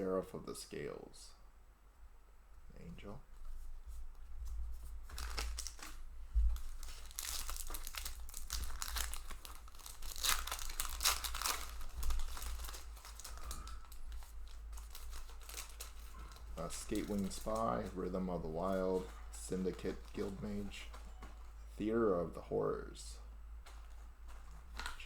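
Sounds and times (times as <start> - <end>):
foil wrappers crinkling and tearing: 5.0 - 21.9, 23.7 - 25.0.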